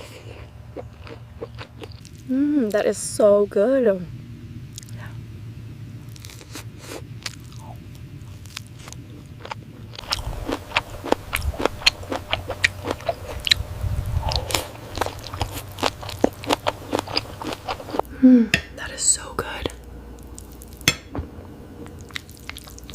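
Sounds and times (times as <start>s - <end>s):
close-miked chewing and biting: 0.0s - 2.3s, 6.1s - 18.1s, 21.8s - 22.9s.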